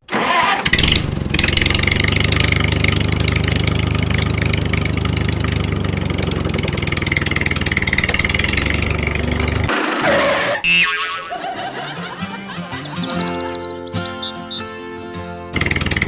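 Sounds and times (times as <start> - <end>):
small tractor engine idling: 0.1 - 9.7, 15.6 - 16.0.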